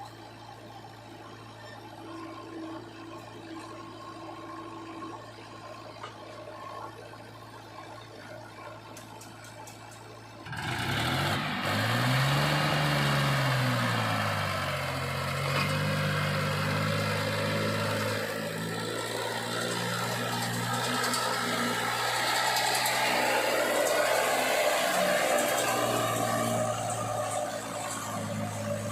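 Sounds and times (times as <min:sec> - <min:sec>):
heavy diesel engine revving: 0:10.4 - 0:28.9.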